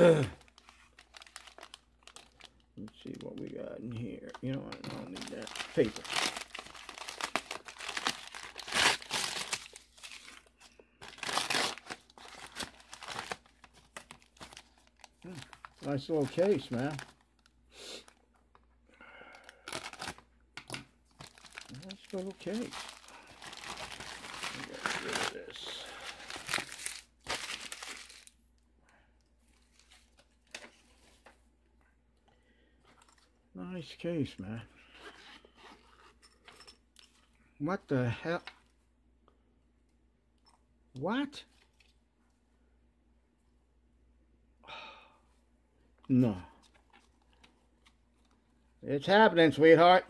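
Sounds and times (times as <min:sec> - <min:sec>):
paper crumpling and rustling: 0:00.0 - 0:03.6, 0:04.2 - 0:17.5, 0:19.7 - 0:28.4, 0:29.4 - 0:31.4.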